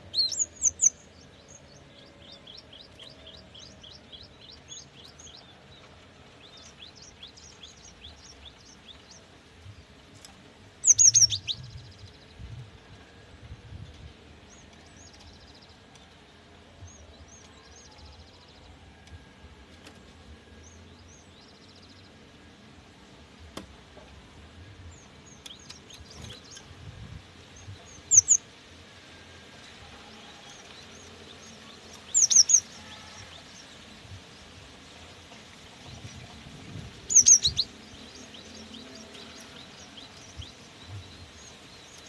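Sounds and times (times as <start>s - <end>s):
tit calling with whistled notes: 10.9s - 11.6s, 28.1s - 28.4s, 32.1s - 32.6s, 37.1s - 37.7s.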